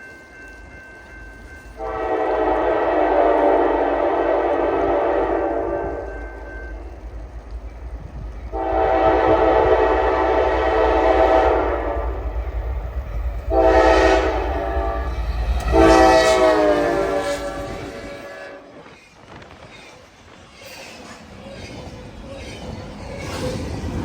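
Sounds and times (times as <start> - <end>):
passing train rumble: 0.0 - 24.0
locomotive air horn blasts: 1.8 - 6.4, 8.5 - 12.3, 13.5 - 18.8.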